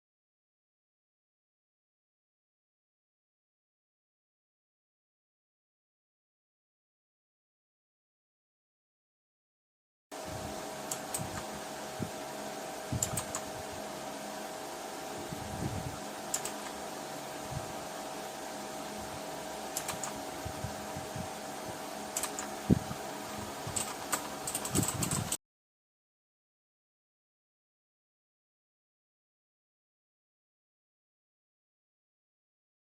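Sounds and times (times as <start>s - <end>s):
background hum: 10.2s - 25.4s
mechanical keyboard clicks: 10.9s - 11.4s, 13.0s - 13.5s, 16.3s - 16.8s, 19.8s - 20.2s, 22.2s - 22.5s, 23.7s - 25.4s.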